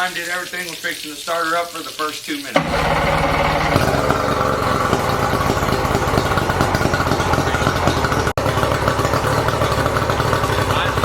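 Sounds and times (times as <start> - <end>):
outboard motor idling: 2.6 - 11.0.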